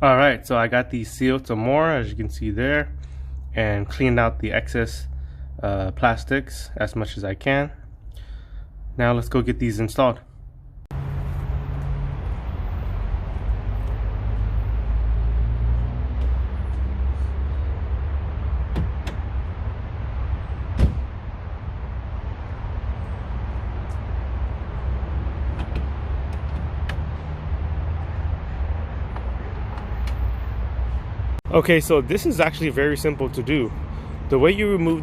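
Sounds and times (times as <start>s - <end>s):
highway traffic rumble: 0.0s - 35.0s
sharp clicks and knocks: 25.5s - 27.1s.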